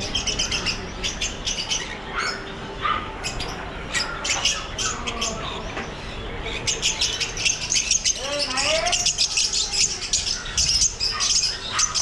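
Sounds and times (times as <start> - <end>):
small birds chirping and squawking: 0.0 - 12.0.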